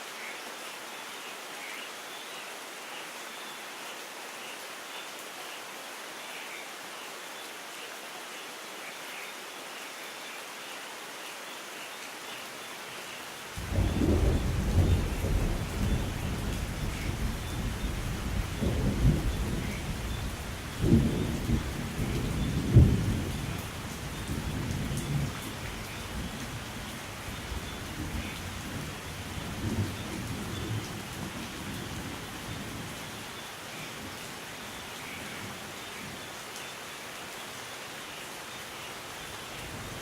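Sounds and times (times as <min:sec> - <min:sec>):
steady rain: 0:00.0 - 0:40.0
rolling thunder: 0:13.6 - 0:23.6.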